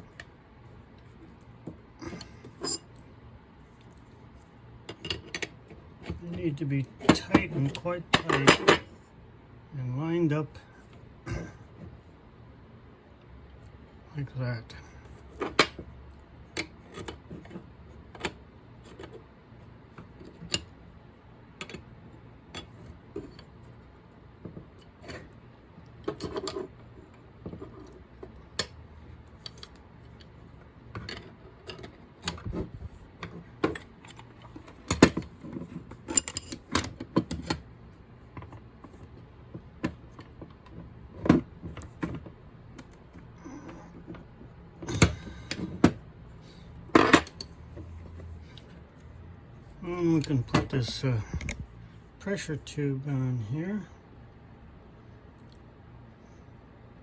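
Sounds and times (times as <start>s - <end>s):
small parts clicking and clinking: 33.2s - 37.6s.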